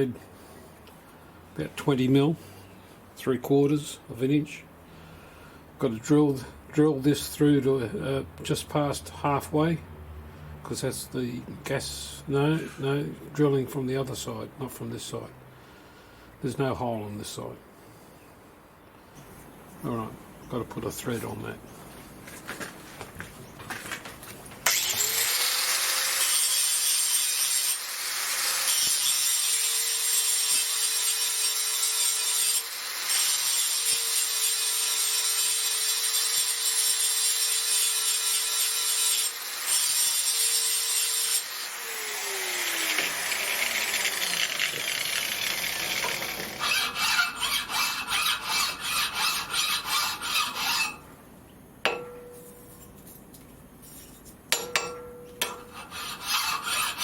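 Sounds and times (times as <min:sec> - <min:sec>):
lathe cutting scrape: 0:39.6 - 0:51.0, 0:55.5 - 0:57.0
lathe motor hum: 0:41.8 - 0:46.8.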